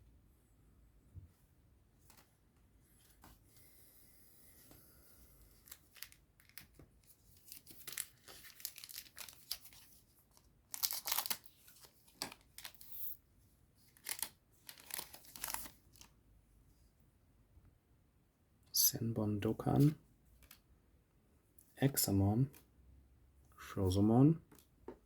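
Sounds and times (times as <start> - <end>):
foil wrapper tearing and crinkling: 7.4 - 9.9, 10.7 - 11.9, 14.0 - 16.0.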